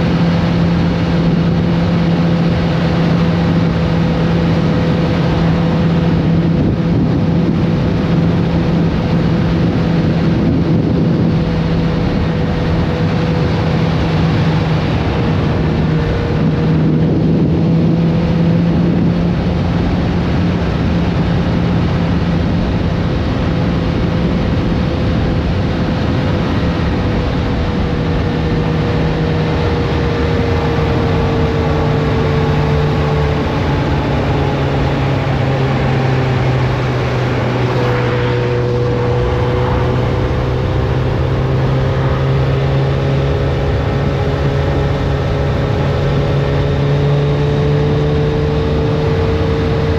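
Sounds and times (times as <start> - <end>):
motorcycle engine cruising: 0.0 - 49.9
rushing noise: 0.0 - 49.9.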